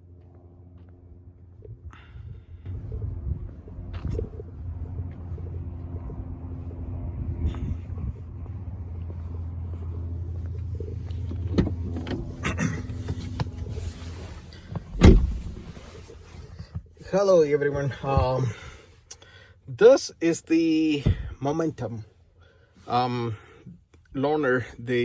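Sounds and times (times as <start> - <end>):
car engine idling: 1.6 - 16.5
loud thump: 14.8 - 15.8.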